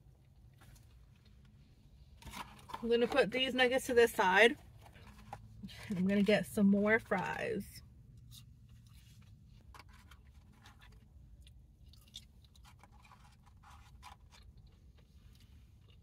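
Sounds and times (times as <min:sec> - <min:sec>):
chewing fries: 0:09.8 - 0:16.0.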